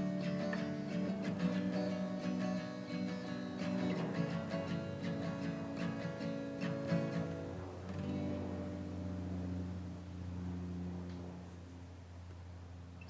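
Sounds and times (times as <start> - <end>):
acoustic guitar strumming: 0.0 - 9.9.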